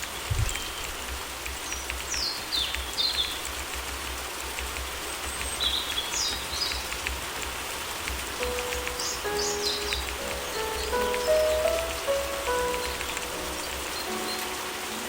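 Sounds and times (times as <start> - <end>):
steady rain: 0.0 - 15.0
water drips ticking: 0.0 - 15.0
bird chirping: 8.4 - 15.0.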